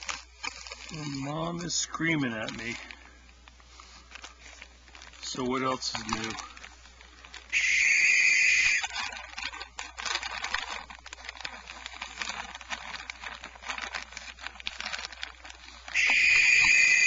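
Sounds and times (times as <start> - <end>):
rustling and clicking: 0.0 - 7.6, 8.7 - 16.8
owl screaming: 7.5 - 9.0, 15.9 - 17.0.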